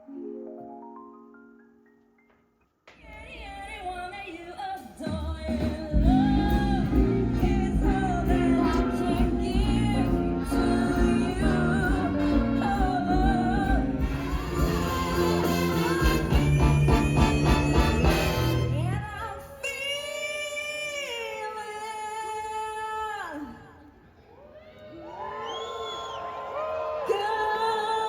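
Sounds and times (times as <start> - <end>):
song with singing voice: 2.9 - 23.9.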